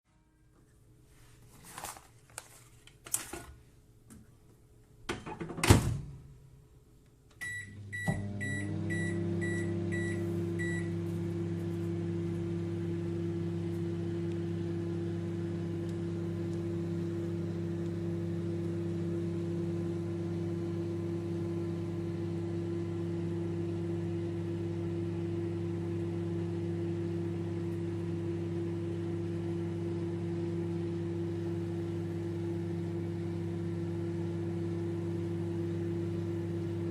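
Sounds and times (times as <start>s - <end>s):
microwave oven humming: 7.4s - 36.9s.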